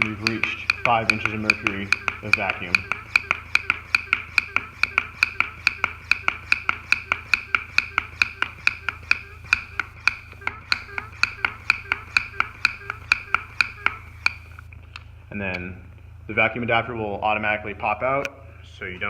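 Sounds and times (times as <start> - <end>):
hand vacuum pump clicking: 0.0 - 15.1
low hum: 0.0 - 19.0.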